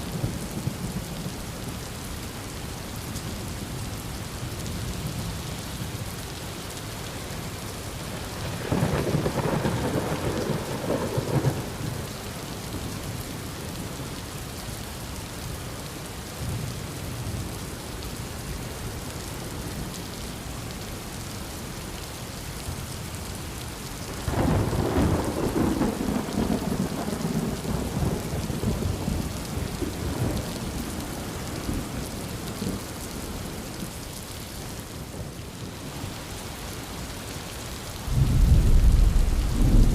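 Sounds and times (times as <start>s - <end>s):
heavy rain: 0.0s - 39.9s
thunder rumbling: 8.5s - 12.1s, 24.3s - 33.7s, 38.0s - 39.9s.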